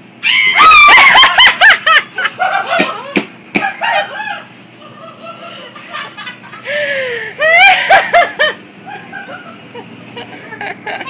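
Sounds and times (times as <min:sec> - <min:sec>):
person shrieking in fright: 0:00.2 - 0:01.2.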